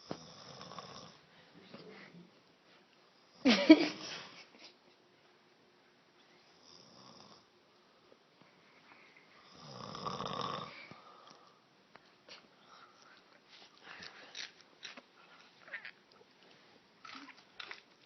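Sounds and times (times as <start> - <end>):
woman snoring: 9.4 - 10.8.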